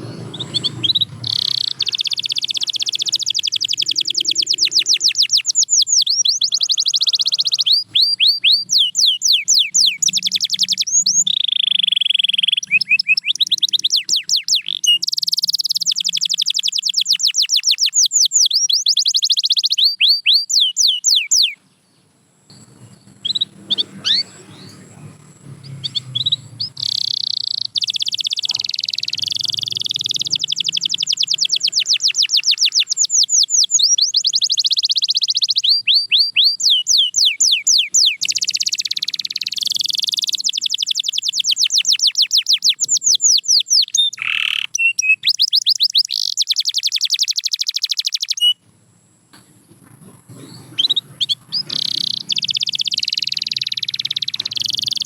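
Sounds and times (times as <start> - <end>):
canary singing trills: 0.0 - 48.6, 49.4 - 55.0.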